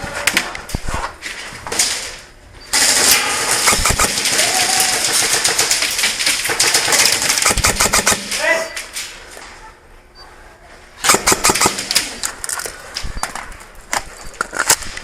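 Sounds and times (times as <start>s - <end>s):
airsoft guns firing full auto: 2.7s - 8.6s, 11.0s - 12.3s.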